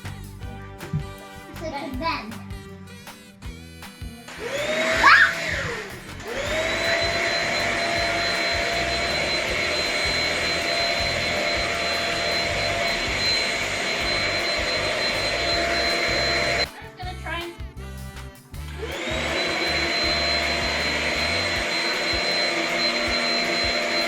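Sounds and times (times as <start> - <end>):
stick vacuum motor whining: 4.3 - 16.7, 18.8 - 24.0.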